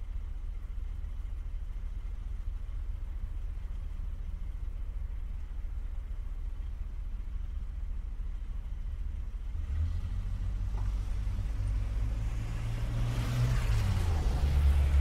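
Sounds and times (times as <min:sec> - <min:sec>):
car engines rumbling: 0:00.0 - 0:15.0
vehicle passing: 0:09.6 - 0:15.0.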